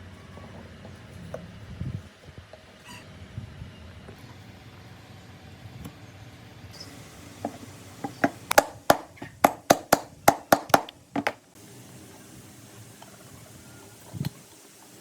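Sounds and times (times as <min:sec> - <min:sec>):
sharp knocks: 0:08.0 - 0:11.4.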